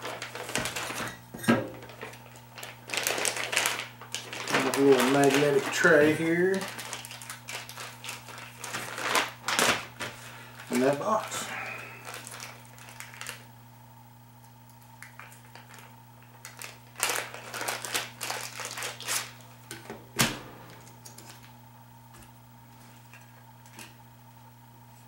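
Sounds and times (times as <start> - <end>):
rustling and clicking of packaging: 0.0 - 11.4, 12.0 - 13.4, 15.0 - 19.9, 20.6 - 21.6
low hum: 19.5 - 22.8.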